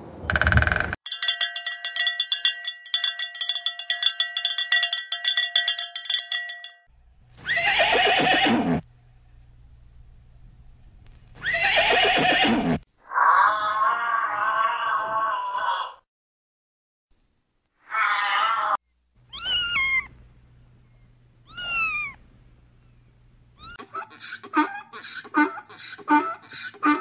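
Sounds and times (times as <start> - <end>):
steady ringing tone: 1.0 - 6.9
horse whinnying: 7.4 - 8.8, 11.4 - 16.0.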